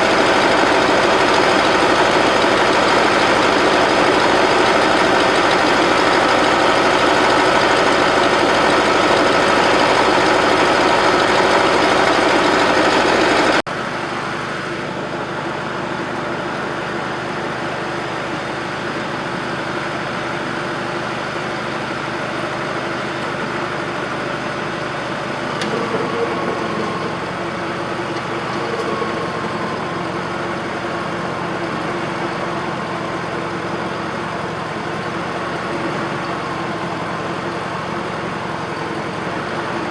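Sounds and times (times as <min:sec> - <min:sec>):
loader engine running: 0:00.0 - 0:39.9.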